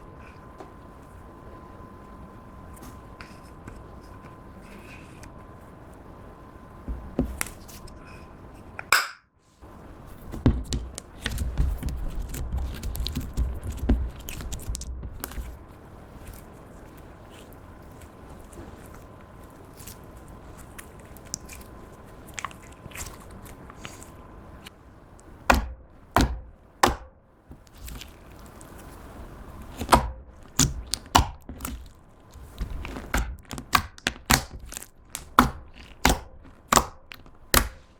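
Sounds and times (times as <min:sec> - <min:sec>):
soft squelching slime: 0:09.5 - 0:37.9
slime squished by hand: 0:27.6 - 0:37.9.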